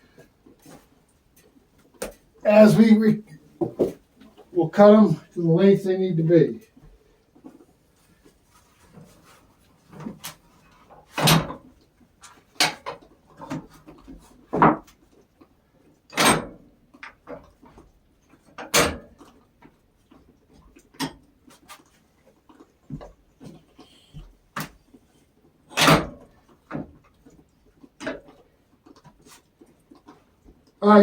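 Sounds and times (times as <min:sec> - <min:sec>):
wooden boards knocking: 0:03.6 - 0:04.0.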